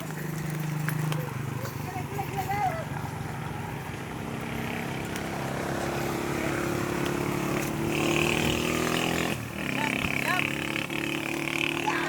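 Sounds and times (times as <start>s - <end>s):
vehicle engine humming: 0.0s - 12.0s.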